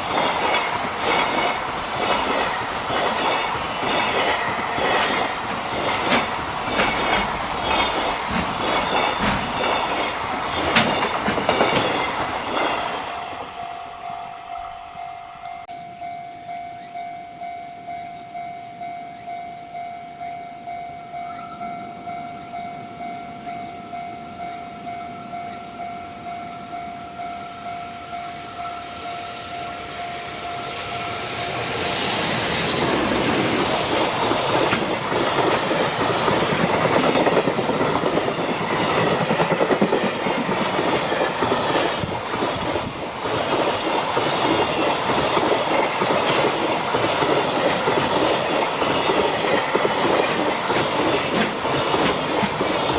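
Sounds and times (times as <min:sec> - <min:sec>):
train wheels clattering: 0:00.0 - 0:13.6, 0:31.0 - 0:52.9
level-crossing alarm clanging: 0:00.0 - 0:52.9.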